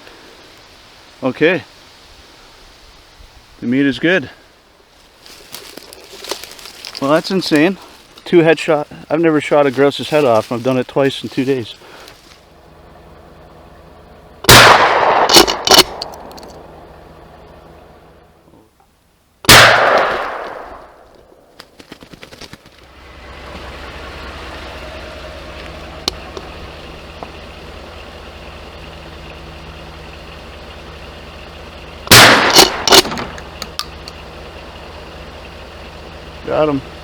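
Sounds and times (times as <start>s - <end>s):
low engine hum: 0.0s - 37.0s
gunshot with echo: 14.5s - 16.0s, 19.5s - 21.0s, 32.1s - 33.2s.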